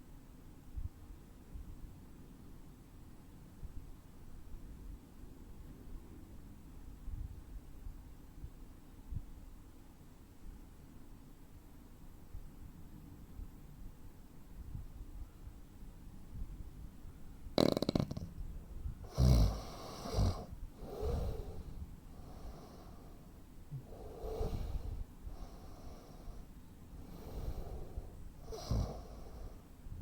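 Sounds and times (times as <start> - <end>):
man snoring heavily: 17.6 - 18.3, 19.1 - 23.2, 23.8 - 29.6
loud fluttering snort: 17.6 - 18.4, 19.1 - 22.9.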